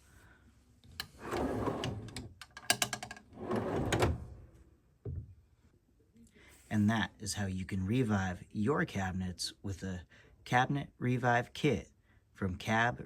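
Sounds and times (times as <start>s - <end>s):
drawer slides rolling: 1.1s - 2.3s, 3.3s - 4.5s.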